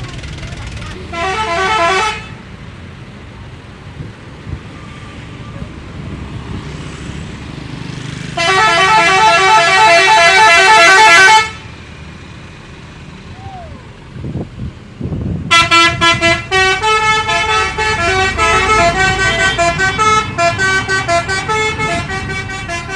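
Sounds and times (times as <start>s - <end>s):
musical bus air horn: 1.0s - 2.4s, 8.4s - 11.7s, 15.5s - 22.9s.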